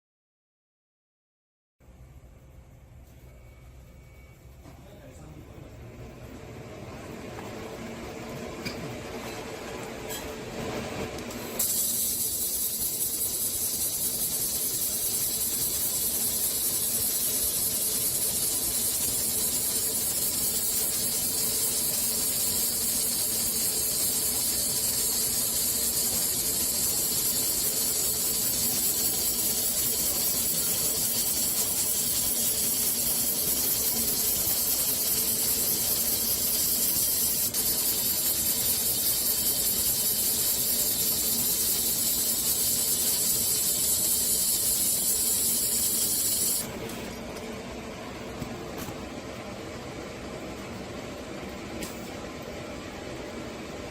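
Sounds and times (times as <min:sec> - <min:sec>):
laser welding machine hissing: 0:07.6 - 0:53.9.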